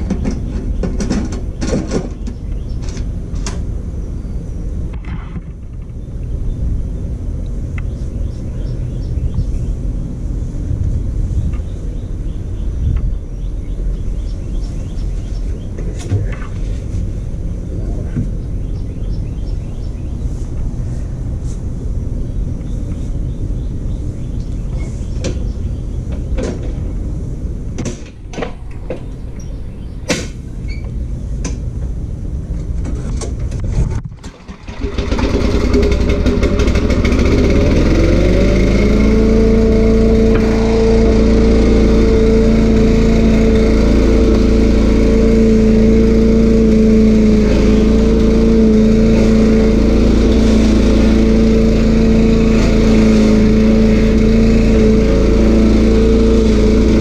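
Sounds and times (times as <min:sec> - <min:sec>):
stump grinder engine revving: 0:34.4 - 0:57.0.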